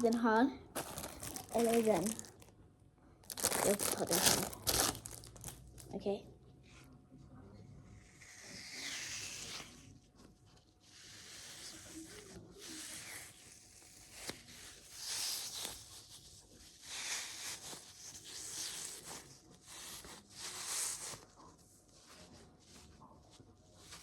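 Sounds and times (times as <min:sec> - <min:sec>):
plastic packaging crinkling: 0:00.0 - 0:02.5, 0:03.2 - 0:05.9.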